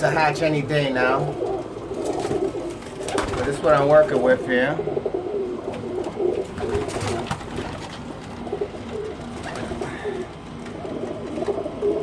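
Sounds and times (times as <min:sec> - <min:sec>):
pigeons cooing: 0:00.0 - 0:12.0
wings fluttering: 0:01.3 - 0:03.7, 0:05.6 - 0:12.0.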